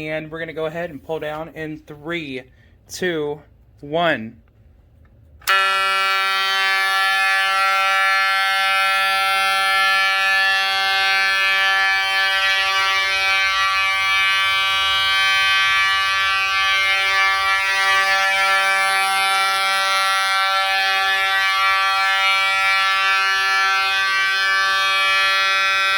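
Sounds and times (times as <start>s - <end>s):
fire alarm horn sounding: 5.4s - 25.9s.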